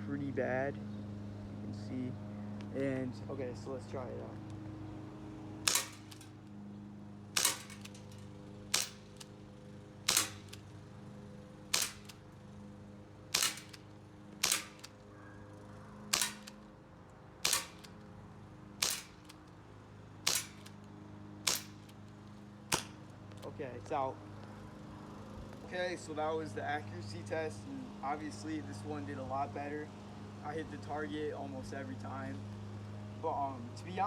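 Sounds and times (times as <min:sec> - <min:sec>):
airsoft pistol shots: 0:05.7 - 0:06.4, 0:07.4 - 0:09.4, 0:10.1 - 0:10.7, 0:11.7 - 0:12.2, 0:13.3 - 0:15.0, 0:16.1 - 0:16.6, 0:17.4 - 0:18.0, 0:18.8 - 0:19.4, 0:20.2 - 0:20.8, 0:21.4 - 0:21.9, 0:22.7 - 0:23.0.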